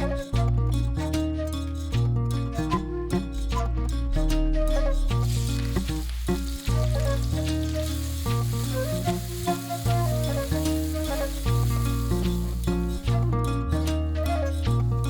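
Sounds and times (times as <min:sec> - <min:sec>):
background music with bass line: 0:00.0 - 0:15.0
food sizzling in a pan: 0:05.2 - 0:13.2.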